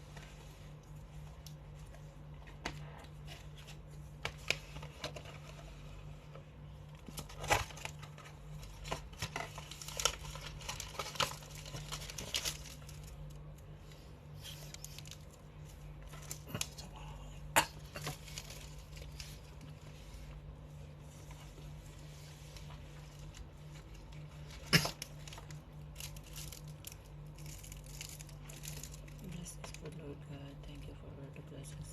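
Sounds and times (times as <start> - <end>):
steady low hum: 0.0 - 31.9
packaging crinkling and tearing: 6.9 - 13.7, 14.4 - 16.9, 17.8 - 19.9, 22.6 - 30.0.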